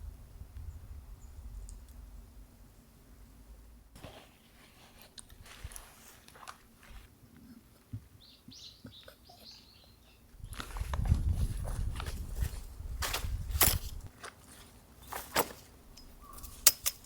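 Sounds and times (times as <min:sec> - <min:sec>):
soft clicks and rustles: 0:04.0 - 0:08.1
bird chirping: 0:08.2 - 0:10.6, 0:16.1 - 0:16.7.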